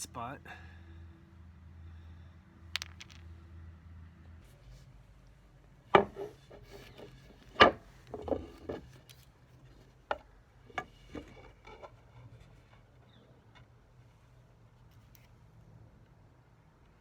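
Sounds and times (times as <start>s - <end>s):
wooden parts knocking: 2.7s - 3.3s, 6.0s - 8.9s.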